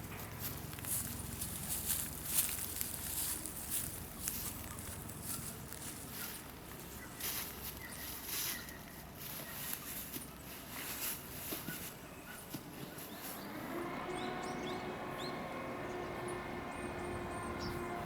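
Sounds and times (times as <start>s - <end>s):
rustling: 0.0s - 13.4s
outdoor background noise: 0.0s - 18.0s
soft footsteps and scuffs: 0.2s - 13.5s.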